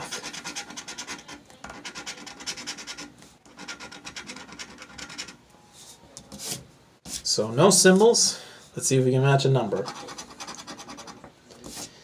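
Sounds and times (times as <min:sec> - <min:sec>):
lottery ticket being scratched: 0:00.0 - 0:07.2, 0:09.8 - 0:11.9.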